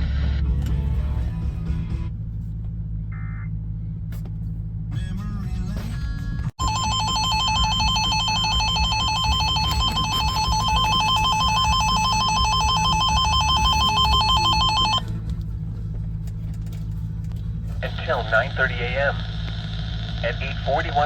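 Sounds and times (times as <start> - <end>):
low vehicle hum: 0.0 - 21.0
warbling emergency alert tone: 6.6 - 15.1.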